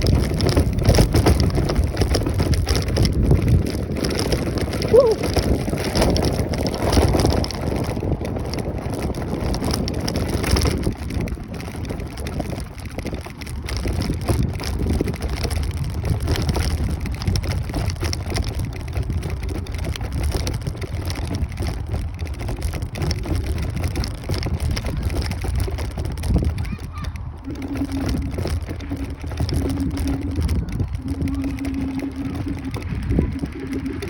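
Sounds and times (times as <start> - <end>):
wind rush: 0.0 - 22.2, 24.0 - 34.0
road rumble: 0.0 - 34.0
wind buffeting microphone: 0.0 - 34.0.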